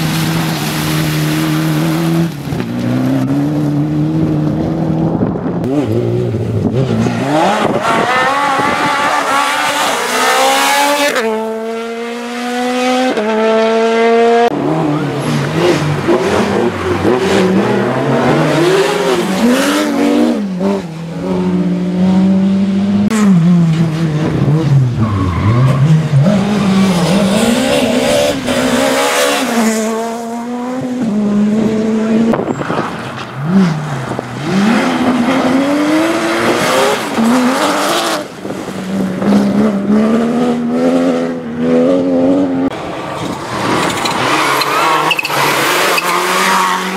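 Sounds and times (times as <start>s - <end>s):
rally car engines revving: 0.0s - 46.9s
tyres squealing: 43.7s - 46.6s.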